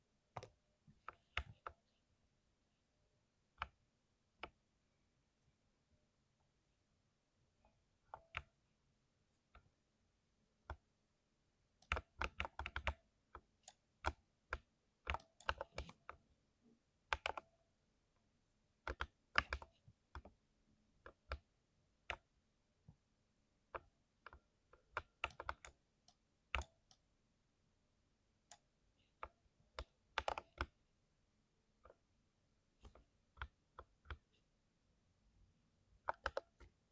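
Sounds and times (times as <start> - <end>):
mechanical keyboard typing: 11.8 - 13.0, 13.6 - 16.0, 24.9 - 25.8, 36.0 - 36.8.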